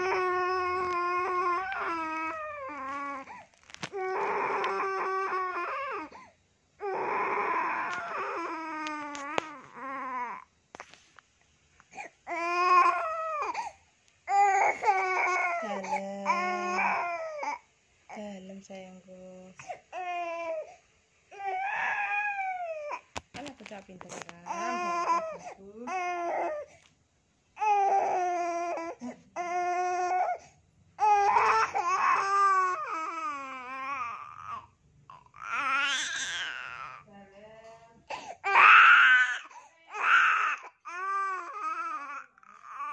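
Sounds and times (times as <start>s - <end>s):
baby crying: 0.0s - 6.2s, 6.8s - 10.4s, 12.3s - 17.6s, 21.3s - 23.1s, 24.5s - 26.7s, 27.6s - 30.4s, 31.0s - 37.0s, 38.1s - 42.9s.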